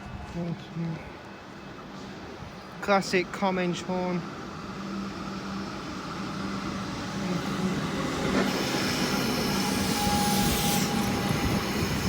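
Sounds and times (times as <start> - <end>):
rail noise: 0.0 - 12.0
electric train humming: 3.2 - 12.0.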